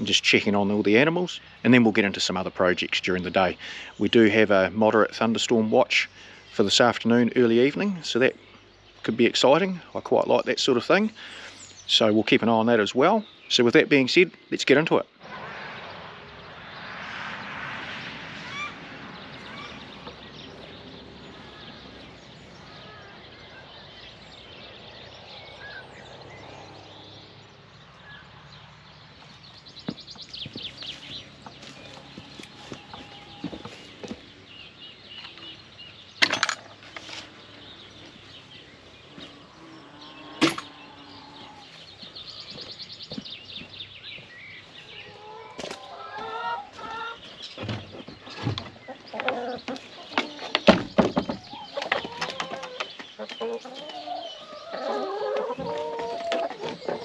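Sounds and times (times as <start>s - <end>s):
birds calling: 0.0s - 57.0s
chickens clucking: 30.0s - 34.4s, 36.6s - 57.0s.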